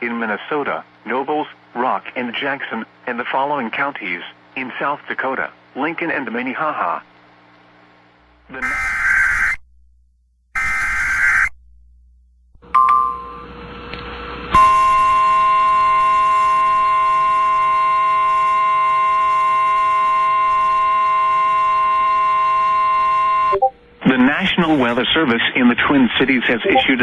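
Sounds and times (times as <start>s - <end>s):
data tone bursts: 8.6s - 9.6s, 10.6s - 11.6s, 14.6s - 25.1s, 26.4s - 27.0s
steady loud warning tone: 8.6s - 9.6s, 10.6s - 11.5s, 12.6s - 25.2s
electronic beep with hiss: 14.6s - 25.0s, 26.5s - 27.0s.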